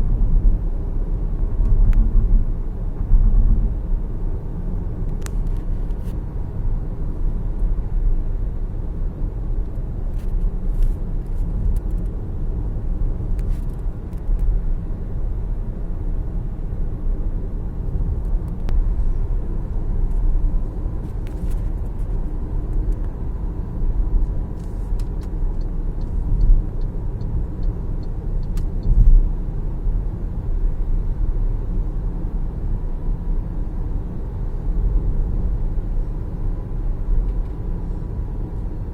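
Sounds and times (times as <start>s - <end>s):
car road and tyre rumble: 0.0s - 38.9s.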